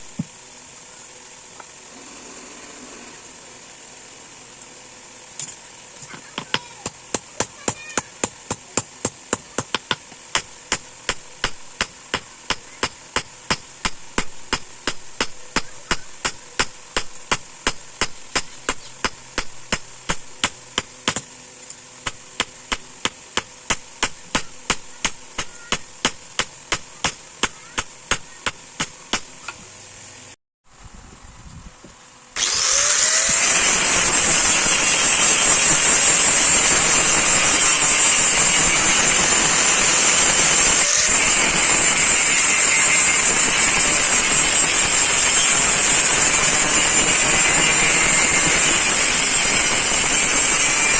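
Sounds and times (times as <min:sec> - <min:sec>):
constant hiss: 0:00.0 - 0:32.9
hammer striking steel on anvil: 0:06.4 - 0:21.2, 0:22.0 - 0:29.6.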